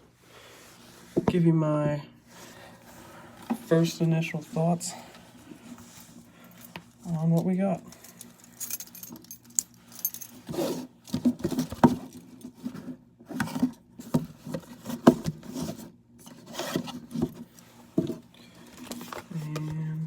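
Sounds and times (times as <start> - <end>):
cardboard box scraping and rubbing: 14.3 - 17.5.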